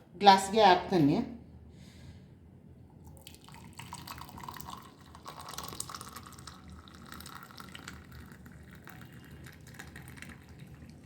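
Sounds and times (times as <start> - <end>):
liquid pouring into a glass: 3.0 - 11.0.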